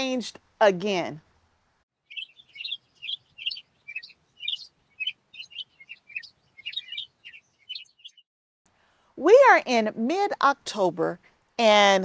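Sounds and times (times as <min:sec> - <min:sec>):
small songbirds chirping: 0:02.1 - 0:08.2.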